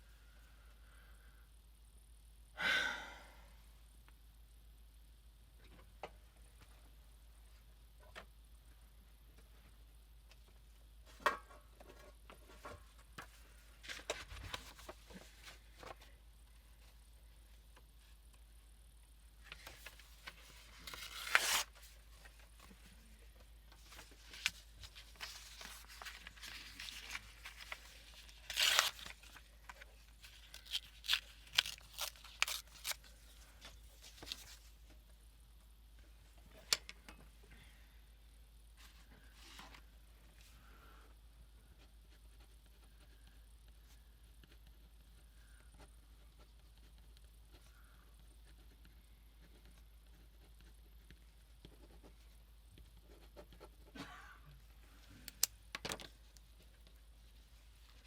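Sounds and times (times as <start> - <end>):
paper tearing: 20.7 - 21.9, 24.3 - 29.4, 30.2 - 33.1.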